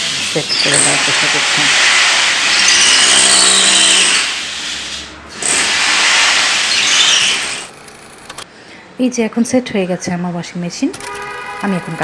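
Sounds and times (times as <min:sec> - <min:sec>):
electric drill boring into wall: 0:00.0 - 0:07.7.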